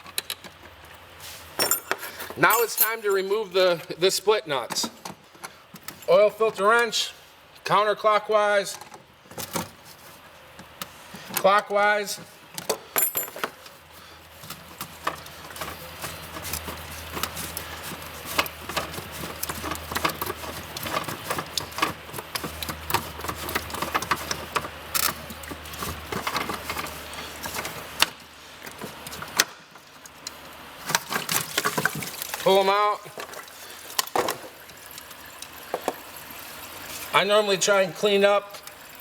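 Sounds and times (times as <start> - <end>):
wrench clicking and rattling on nuts: 1.6 - 3.3.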